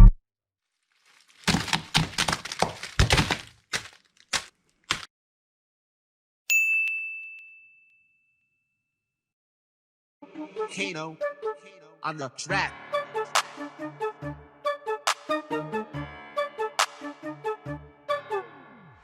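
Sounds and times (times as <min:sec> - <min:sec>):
bright metallic ding: 0:06.5 - 0:08.4.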